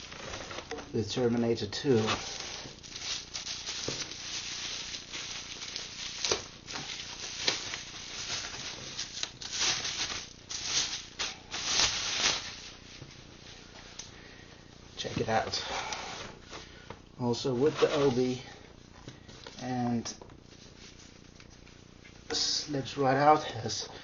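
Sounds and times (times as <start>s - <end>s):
packaging rustling and scraping: 0.0s - 0.9s, 1.8s - 13.1s, 17.5s - 18.4s
crinkles and knocks: 2.9s - 12.4s.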